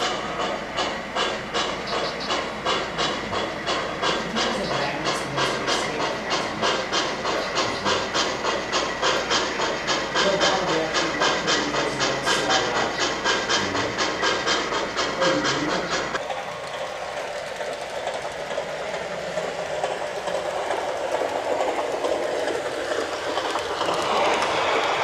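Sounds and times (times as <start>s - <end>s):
model train hissing rumble: 0.0s - 25.0s
model train rhythmic beat: 0.0s - 25.0s.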